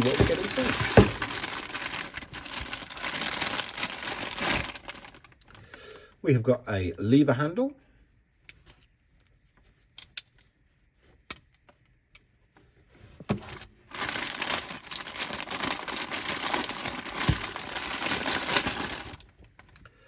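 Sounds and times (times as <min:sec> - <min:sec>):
plastic packaging crinkling: 0:00.0 - 0:05.7, 0:13.3 - 0:19.8.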